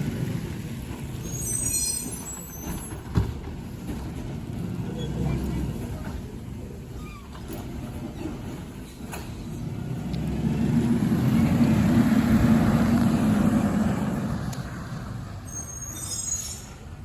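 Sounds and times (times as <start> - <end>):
brief high squeal: 1.2 - 3.0, 15.4 - 16.9
garbage truck driving past: 7.8 - 15.8.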